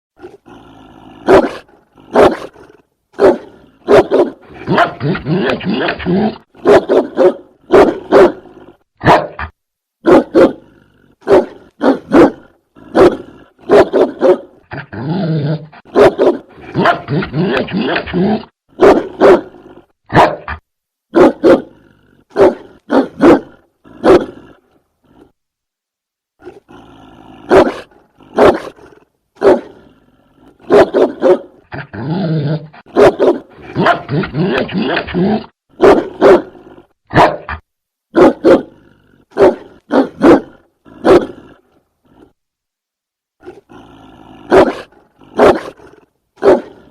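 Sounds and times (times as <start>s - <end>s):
dog growling: 0.2s - 8.8s, 10.1s - 20.6s, 26.4s - 37.6s, 43.4s - 46.9s
dog barking: 1.2s - 14.6s, 15.8s - 24.5s, 27.4s - 29.8s, 30.6s - 31.6s, 32.6s - 41.5s, 44.4s - 46.9s.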